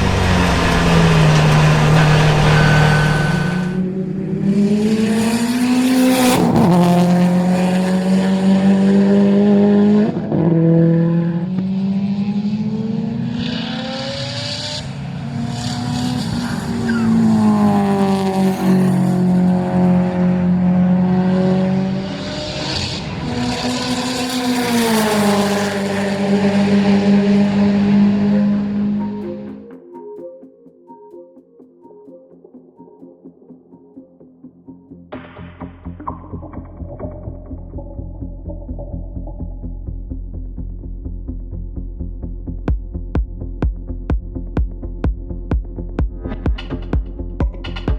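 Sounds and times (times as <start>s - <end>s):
race car engine accelerating: 0.0s - 29.6s.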